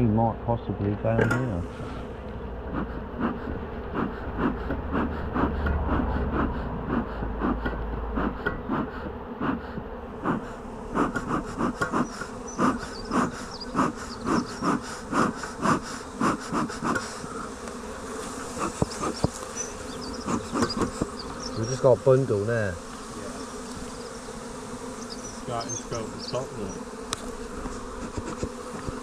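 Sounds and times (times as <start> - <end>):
bees humming: 0.0 - 29.0.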